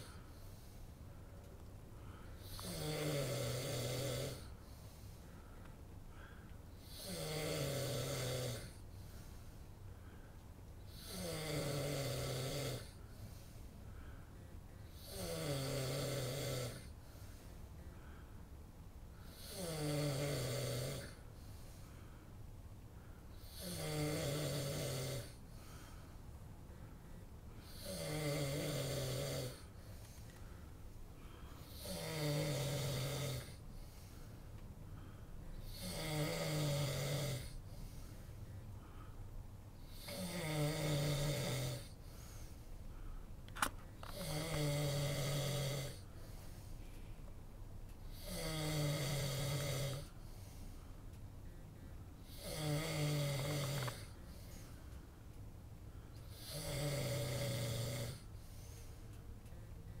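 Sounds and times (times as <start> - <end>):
person snoring: 2.4 - 4.7, 6.8 - 8.8, 10.9 - 13.0, 14.9 - 17.0, 19.2 - 21.2, 23.4 - 25.9, 27.6 - 29.8, 31.2 - 34.0, 35.5 - 38.1, 39.8 - 42.4, 44.1 - 46.1, 48.0 - 50.3, 52.2 - 54.4, 56.2 - 58.3.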